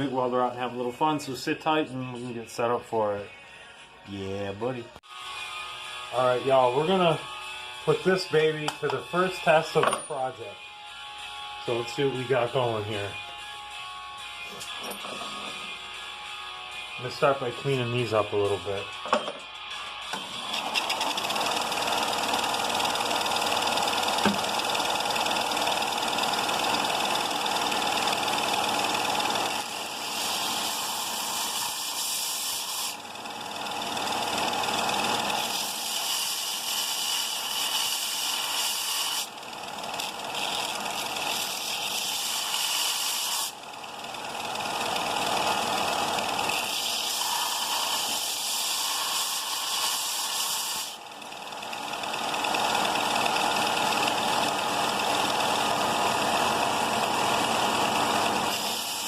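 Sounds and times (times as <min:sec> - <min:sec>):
sander motor hum: 0:20.1 - 0:59.0
metal grinding hiss on sander: 0:29.3 - 0:33.0, 0:35.4 - 0:39.3, 0:41.2 - 0:43.5, 0:46.6 - 0:51.0, 0:58.5 - 0:59.0.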